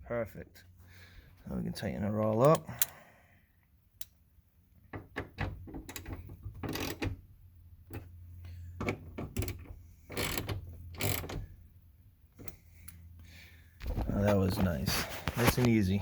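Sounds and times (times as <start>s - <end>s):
ratchet clicking: 10.2s - 11.4s.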